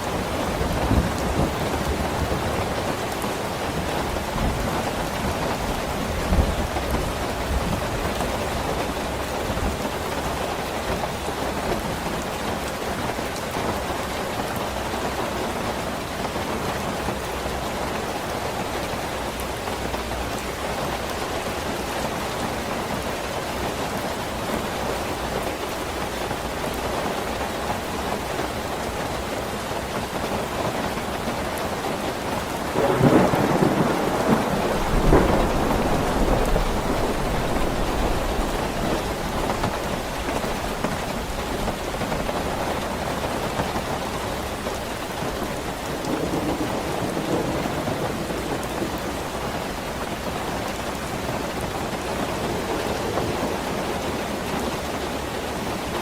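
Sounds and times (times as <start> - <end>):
steady rain: 0.0 - 56.0
thunder rumble: 32.2 - 55.9
thunder cracking: 32.7 - 40.8, 45.9 - 49.4.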